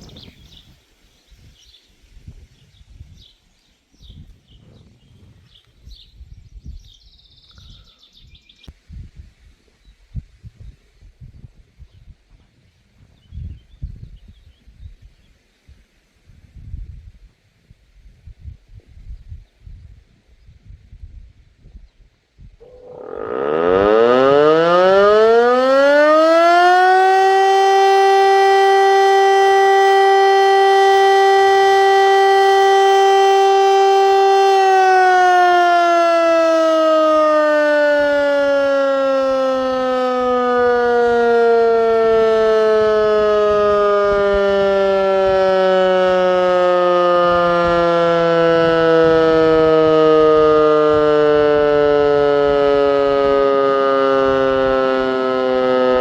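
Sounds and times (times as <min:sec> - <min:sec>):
civil defence siren wailing: 0:22.6 - 0:56.0.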